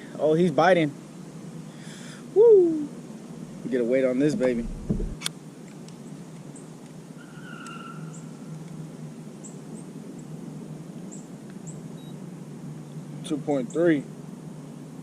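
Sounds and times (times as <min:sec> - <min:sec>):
low background hiss: 0:00.0 - 0:07.3, 0:08.0 - 0:15.0.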